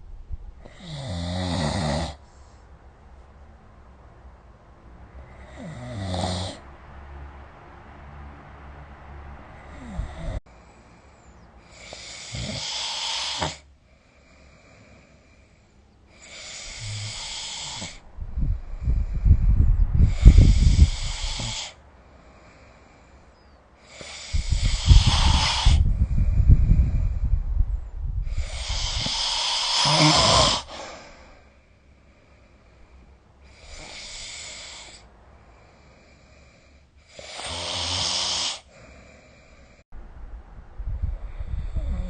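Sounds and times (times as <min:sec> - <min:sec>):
person snoring: 0:00.6 - 0:02.2, 0:05.2 - 0:06.6, 0:09.6 - 0:10.4, 0:11.7 - 0:15.2, 0:16.1 - 0:18.0, 0:20.0 - 0:21.8, 0:23.8 - 0:27.3, 0:28.2 - 0:31.4, 0:33.4 - 0:39.8, 0:41.3 - 0:42.0
airy hissing breaths: 0:09.4 - 0:27.4, 0:28.2 - 0:39.9.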